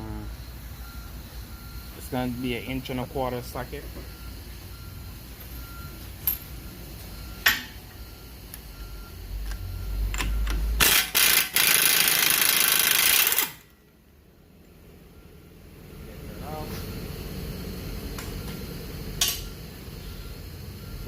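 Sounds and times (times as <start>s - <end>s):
impact wrench hammering: 10.2s - 13.7s.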